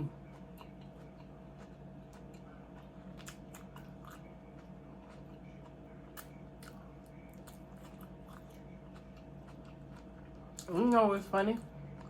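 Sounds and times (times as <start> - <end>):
person crunching food: 0.1 - 11.0.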